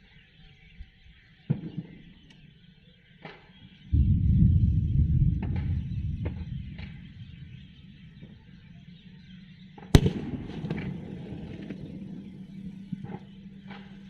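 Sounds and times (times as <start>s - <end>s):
thunderclap crack: 3.9s - 8.4s, 9.9s - 12.4s
thunder rumble: 3.9s - 14.0s.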